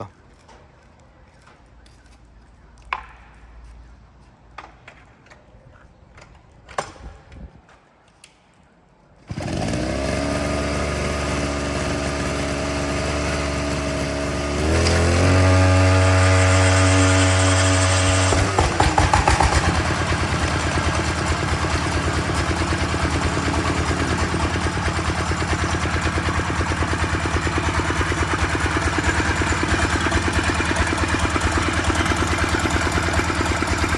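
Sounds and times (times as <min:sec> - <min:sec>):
starter motor whine: 0:09.3 - 0:33.9
diesel engine knocking: 0:18.3 - 0:33.9.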